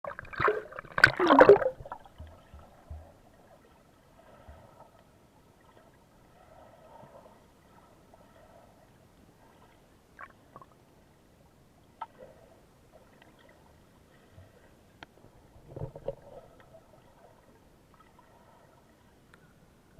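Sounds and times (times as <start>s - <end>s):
small waves lapping: 0.1s - 10.6s, 16.2s - 19.5s.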